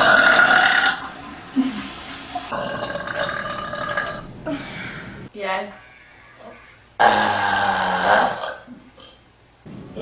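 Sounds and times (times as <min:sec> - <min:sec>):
woman burping: 0:00.0 - 0:01.0, 0:02.5 - 0:04.6, 0:07.0 - 0:09.2.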